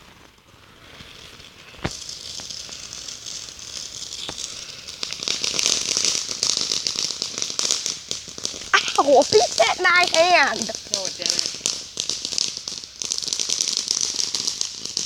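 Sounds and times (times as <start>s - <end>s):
firework crackling: 0.0s - 15.0s
firework pop: 4.1s - 15.0s.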